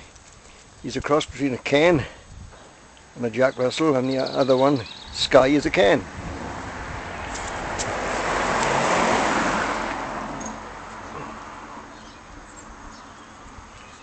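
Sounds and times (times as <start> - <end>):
car driving past: 6.0 - 11.9.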